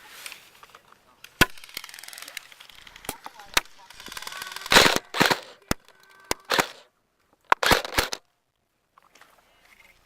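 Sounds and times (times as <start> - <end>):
airsoft guns firing: 2.8 - 6.9, 7.5 - 8.2.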